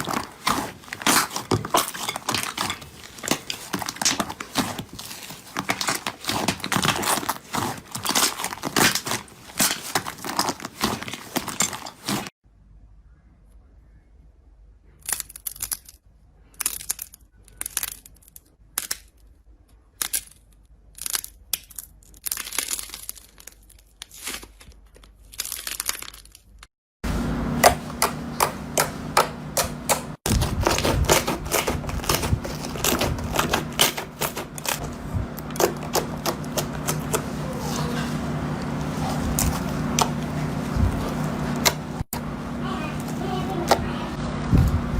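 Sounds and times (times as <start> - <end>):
steady low hum: 27.0 - 44.9.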